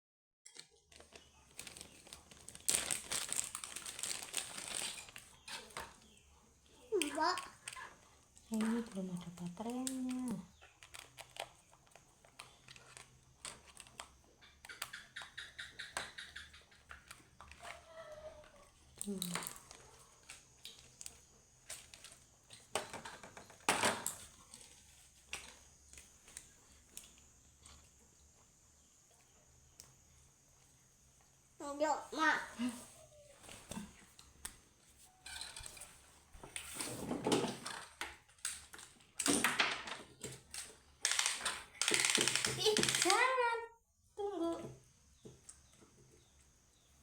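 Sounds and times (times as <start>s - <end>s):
packaging crinkling and rustling: 0.8s - 5.9s, 9.8s - 14.2s
plastic toy clicks and rattles: 8.6s - 17.8s, 37.6s - 43.4s.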